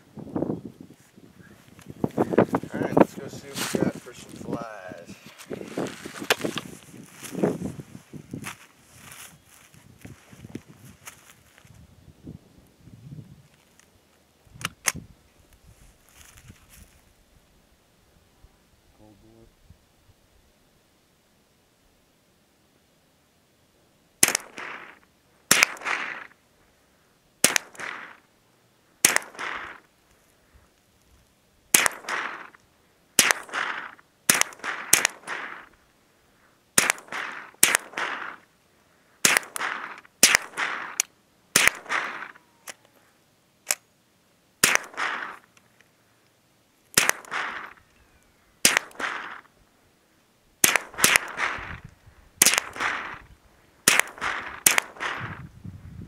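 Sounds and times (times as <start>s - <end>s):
rifle shots echoing: 24.2s - 26.4s, 27.4s - 28.3s, 29.0s - 29.9s, 31.7s - 32.6s, 33.2s - 35.8s, 36.8s - 38.5s, 39.2s - 42.4s, 44.6s - 45.5s, 46.9s - 47.9s, 48.6s - 49.5s, 50.6s - 55.4s.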